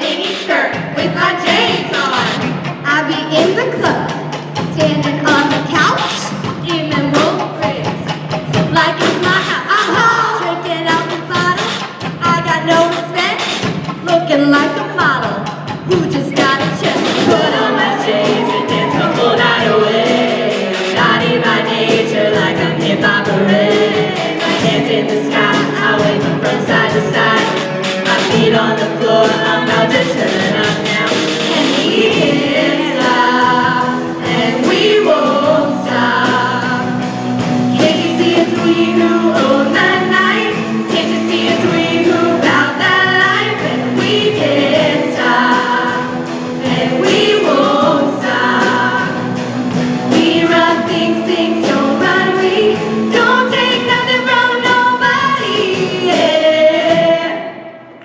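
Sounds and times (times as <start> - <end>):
women singing in harmony: 0.0 - 2.3, 16.0 - 58.0.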